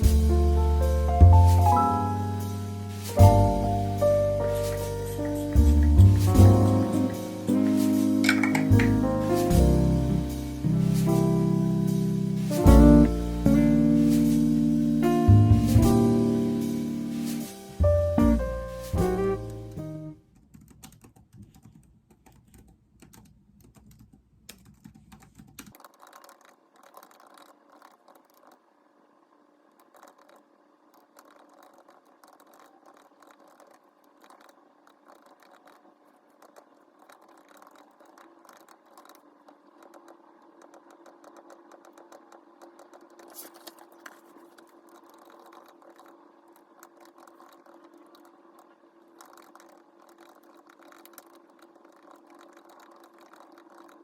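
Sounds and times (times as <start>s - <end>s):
low steady hum: 0.0s - 20.3s
faint keyboard typing: 20.2s - 28.7s, 29.7s - 54.0s.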